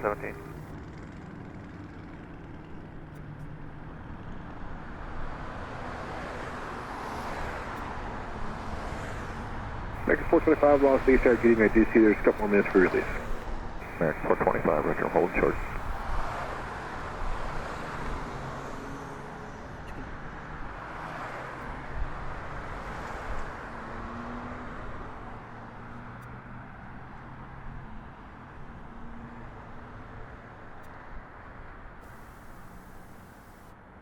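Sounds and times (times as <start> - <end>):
jet engine rushing: 10.0 - 16.0.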